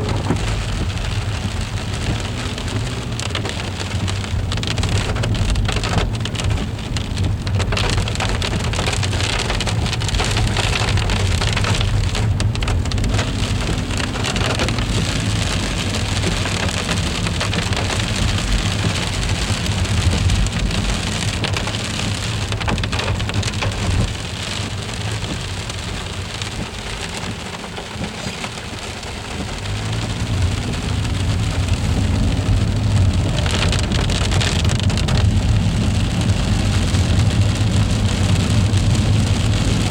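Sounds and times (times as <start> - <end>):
low rumble: 0.0 - 8.7
freezing rain pattering: 0.0 - 39.9.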